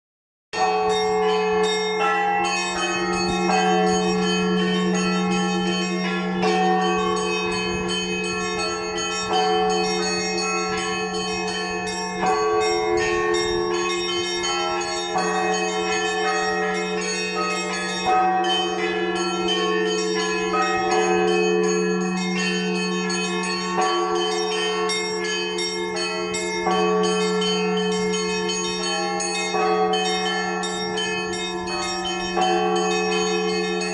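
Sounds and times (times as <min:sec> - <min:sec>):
small bells rhythmic pattern: 0:00.6 - 0:33.9
large bell hum and strokes: 0:02.8 - 0:15.9.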